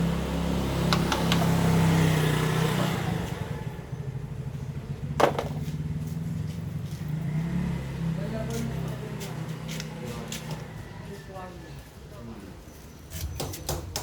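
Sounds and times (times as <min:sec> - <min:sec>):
engine running: 0:00.0 - 0:10.8.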